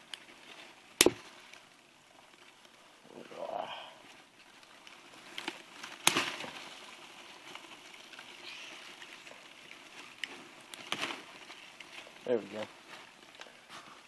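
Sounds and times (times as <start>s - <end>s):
cardboard box clicks and crackling: 4.3s - 13.6s.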